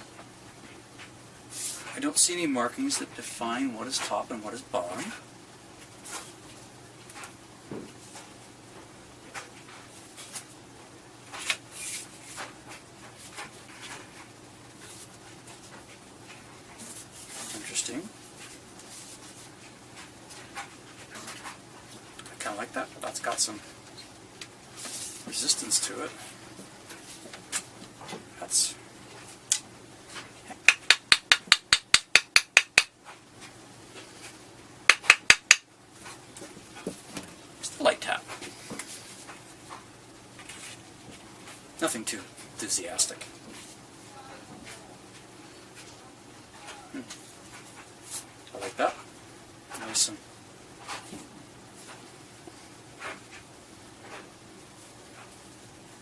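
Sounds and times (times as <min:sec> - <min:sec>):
scraping rustle: 0:01.5 - 0:02.1, 0:23.6 - 0:28.2.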